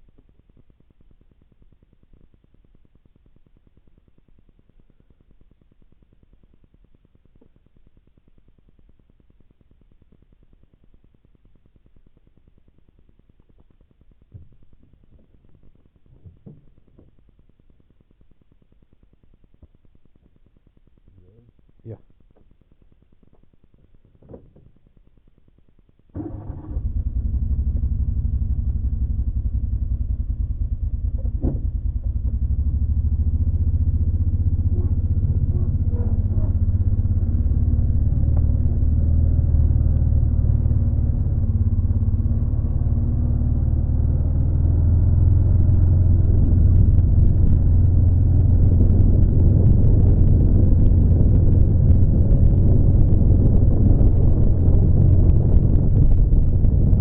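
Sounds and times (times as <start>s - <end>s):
vehicle engine rumbling: 26.2s - 57.0s.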